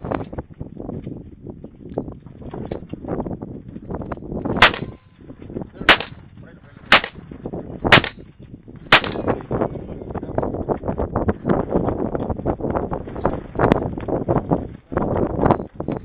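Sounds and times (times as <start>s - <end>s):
gunshots: 4.6s - 5.0s, 5.9s - 6.2s, 6.9s - 7.2s, 7.9s - 8.2s, 8.9s - 9.3s.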